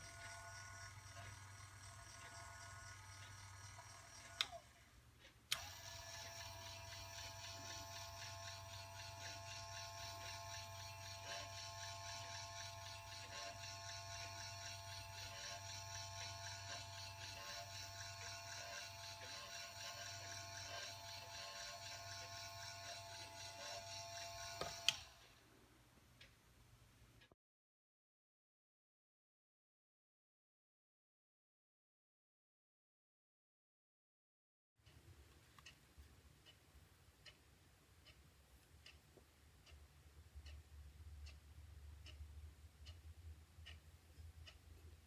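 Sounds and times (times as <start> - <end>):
turntable motor whine and hum: 0.0 - 4.8, 5.6 - 25.2.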